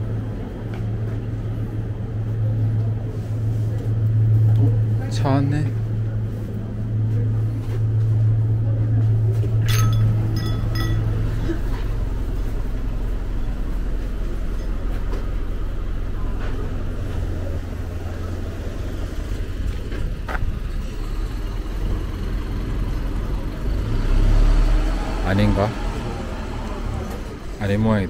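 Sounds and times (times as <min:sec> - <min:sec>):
bus engine idling: 0:00.0 - 0:28.0
short metallic clinks: 0:09.6 - 0:11.3.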